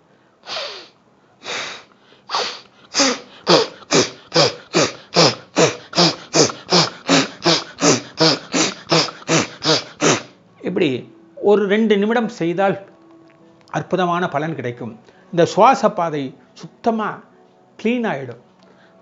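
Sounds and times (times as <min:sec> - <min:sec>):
forceful nasal exhalations: 0:00.4 - 0:10.4.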